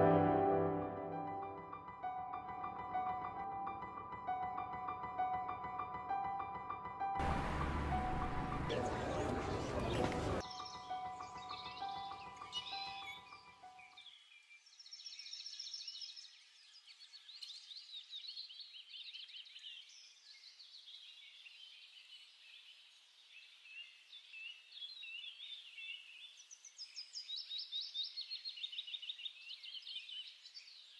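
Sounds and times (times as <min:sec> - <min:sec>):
small birds chirping and trilling: 0:07.4 - 0:30.9.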